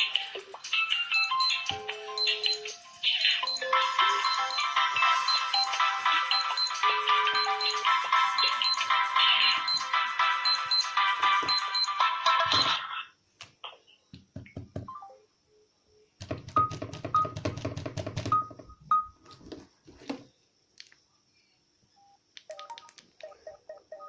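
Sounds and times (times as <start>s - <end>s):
ringtone snippets: 0.0s - 13.1s
phone electronic beeps: 1.0s - 12.9s, 16.5s - 17.4s, 18.2s - 19.4s, 22.0s - 24.0s
phone clicks and handling noise: 22.4s - 23.3s.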